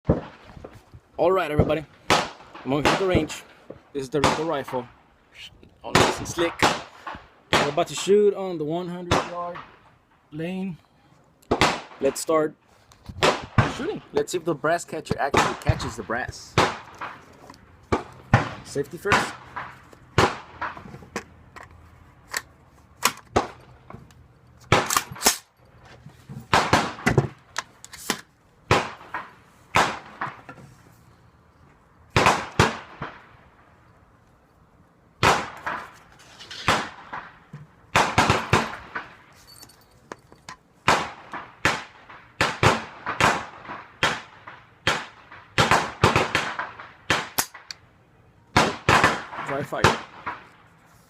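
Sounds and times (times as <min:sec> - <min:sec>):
rifle shots with echo: 0:02.0 - 0:03.5, 0:04.2 - 0:04.9, 0:05.9 - 0:07.9, 0:08.9 - 0:09.8, 0:11.5 - 0:12.4, 0:13.2 - 0:14.2, 0:15.3 - 0:17.2, 0:17.9 - 0:20.8, 0:26.5 - 0:27.0, 0:28.7 - 0:30.4, 0:32.2 - 0:33.3, 0:35.2 - 0:35.8, 0:36.7 - 0:39.2, 0:40.9 - 0:47.7, 0:48.6 - 0:50.4.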